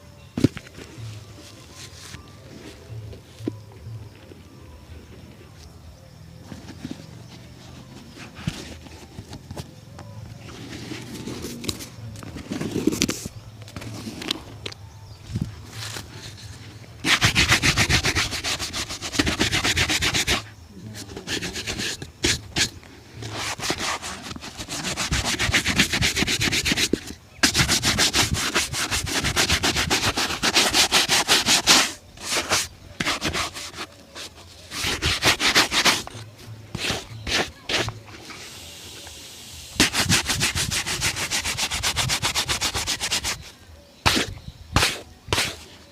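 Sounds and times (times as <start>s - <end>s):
shoe being buffed: 17.0s - 38.8s, 39.8s - 45.7s.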